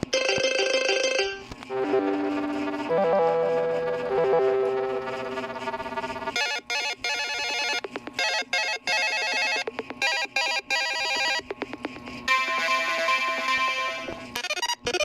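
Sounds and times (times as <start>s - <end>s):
electronic telephone bell ringtone: 0.1s - 1.4s, 6.4s - 11.4s
ringtone tune: 0.1s - 11.7s, 12.3s - 15.0s.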